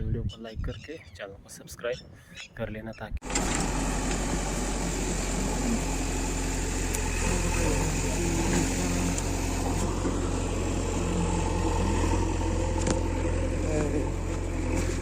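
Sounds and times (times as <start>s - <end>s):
diesel engine humming: 3.2s - 15.0s.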